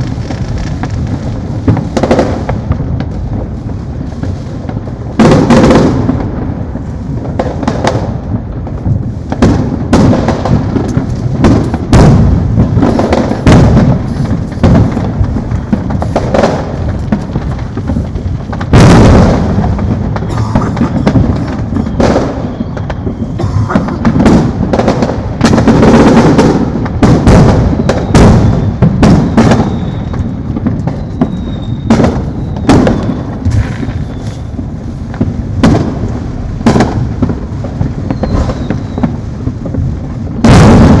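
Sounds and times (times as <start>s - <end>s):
fireworks booming and crackling: 0.0s - 41.0s.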